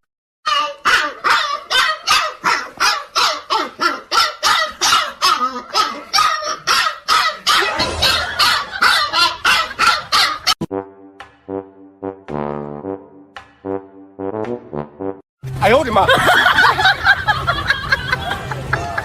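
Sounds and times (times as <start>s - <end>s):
dog barking: 0.5s - 10.6s.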